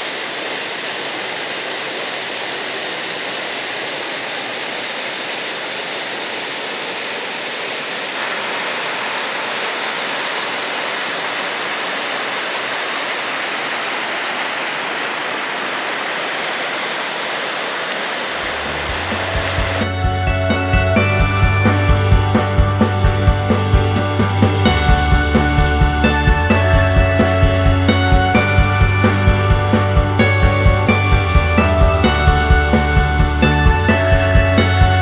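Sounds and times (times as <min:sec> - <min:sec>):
waterfall pouring: 0:00.0 - 0:20.1
music with deep bass: 0:18.5 - 0:35.0.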